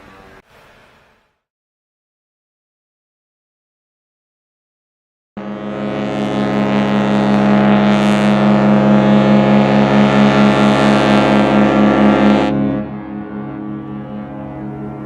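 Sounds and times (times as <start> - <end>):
ship's horn blast: 5.4 - 15.0.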